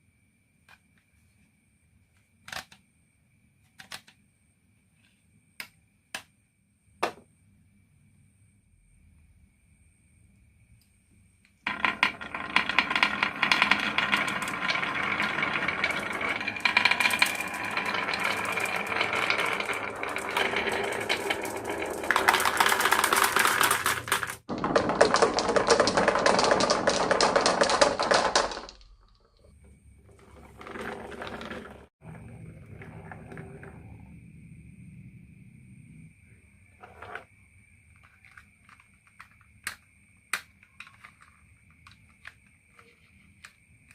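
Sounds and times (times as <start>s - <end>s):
marbles clattering down a run: 11.7s - 29.3s, 30.0s - 34.0s.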